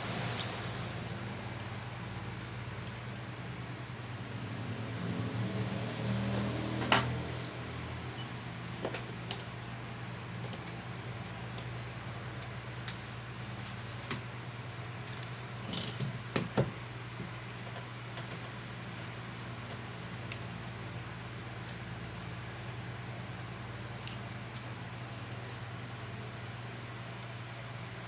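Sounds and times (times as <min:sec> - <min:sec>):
metal tools clicking and clinking: 0:08.8 - 0:09.0, 0:15.6 - 0:16.1
low steady hum: 0:14.5 - 0:16.2.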